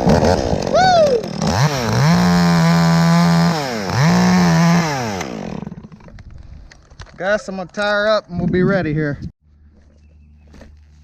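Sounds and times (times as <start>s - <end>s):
chainsaw revving: 0.0s - 6.0s.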